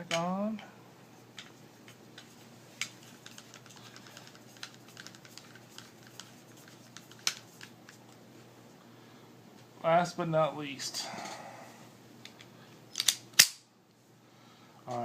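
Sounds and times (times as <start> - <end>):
pistol metallic clicks: 12.9 - 13.7.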